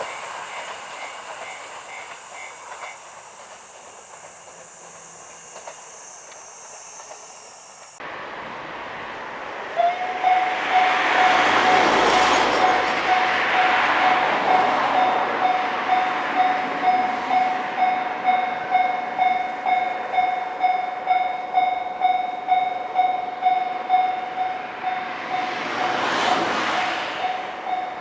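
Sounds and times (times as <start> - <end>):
train passing: 0.0 - 28.0
railroad crossing bell ringing: 8.2 - 28.0.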